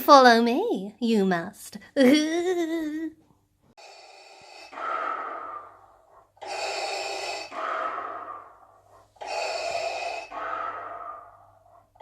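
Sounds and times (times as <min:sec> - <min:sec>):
respirator breathing through mask: 0:03.8 - 0:12.0.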